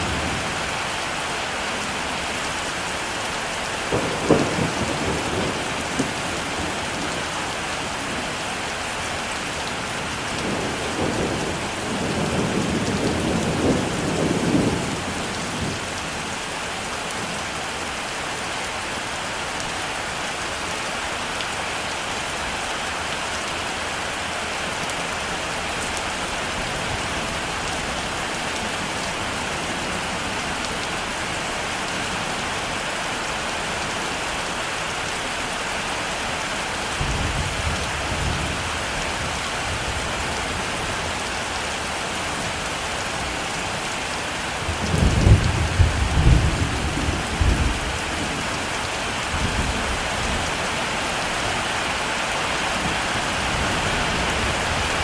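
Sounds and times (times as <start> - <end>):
heavy rain falling: 0.0 - 55.0
thunder clap: 3.9 - 6.2
thunder rumble: 3.9 - 7.4.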